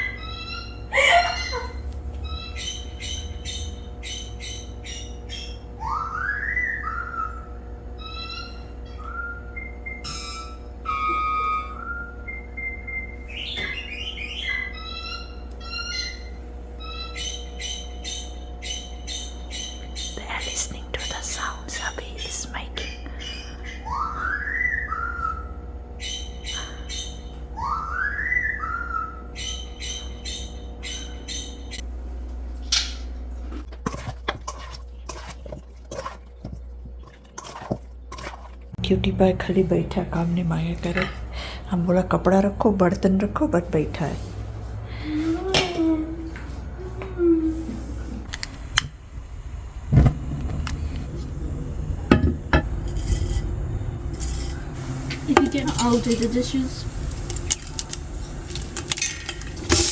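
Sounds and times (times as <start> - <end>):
steady low hum: 0.0 - 59.9
high bird chirps: 2.2 - 10.7, 12.3 - 20.2.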